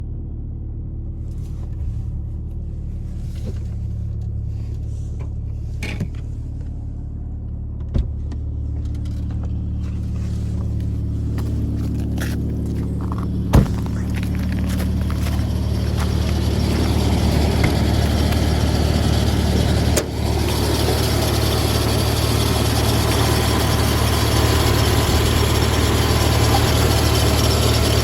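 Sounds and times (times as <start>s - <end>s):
car engine running: 0.0s - 28.0s
alternator squeaks: 10.8s - 28.0s.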